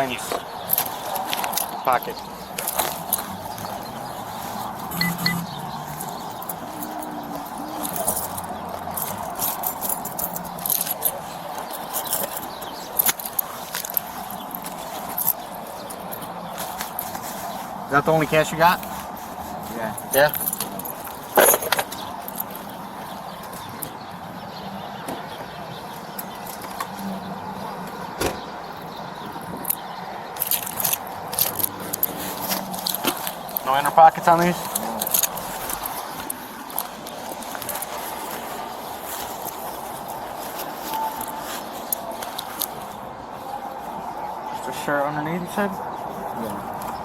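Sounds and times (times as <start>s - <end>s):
clothing rustling: 0.2s - 22.8s, 30.4s - 44.0s
coins and small items clicking: 4.8s - 17.0s, 30.4s - 33.8s, 34.5s - 38.2s.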